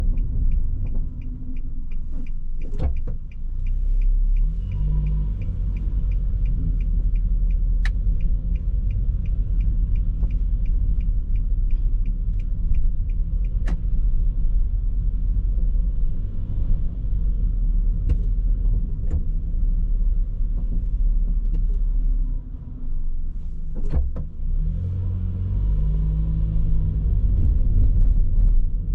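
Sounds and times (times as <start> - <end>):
regular ticking: 0.0 - 15.4
road and engine rumble: 0.0 - 28.9.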